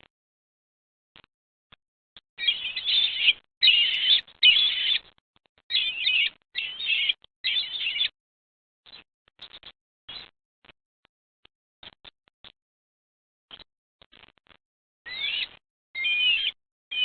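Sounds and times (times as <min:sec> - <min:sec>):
eagle chittering calls: 0:02.4 - 0:05.0, 0:05.7 - 0:08.1, 0:15.1 - 0:17.0.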